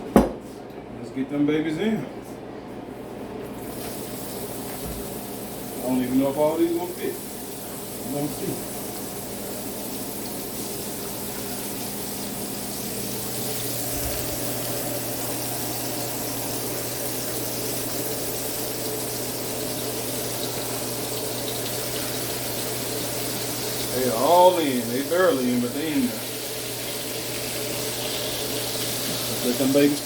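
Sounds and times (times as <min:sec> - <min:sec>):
patties sizzling in a skillet: 0:06.9 - 0:30.0.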